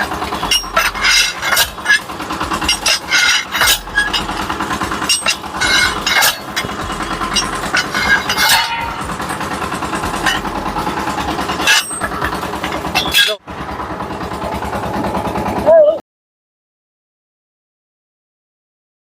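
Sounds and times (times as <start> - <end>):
hand tools striking steel rim: 0.0 - 13.4.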